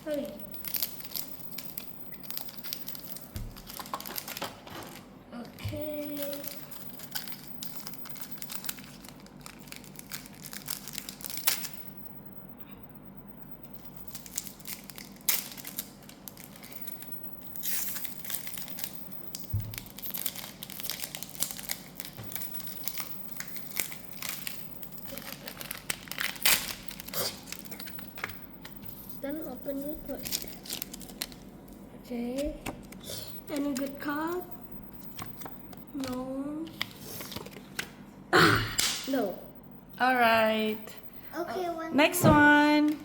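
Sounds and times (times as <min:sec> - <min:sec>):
foil wrapper crinkling and tearing: 0:00.4 - 0:05.0, 0:05.8 - 0:11.9, 0:13.8 - 0:31.5.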